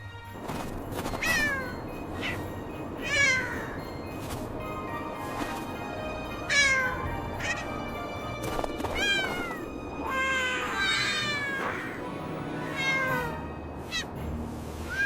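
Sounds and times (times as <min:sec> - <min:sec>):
soft background music: 0:00.0 - 0:15.0
kitten meowing: 0:06.5 - 0:07.6, 0:12.6 - 0:13.4.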